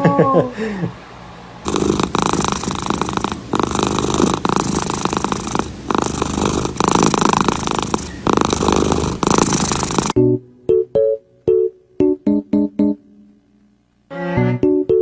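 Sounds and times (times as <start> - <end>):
cat purring loudly: 1.6 - 10.2.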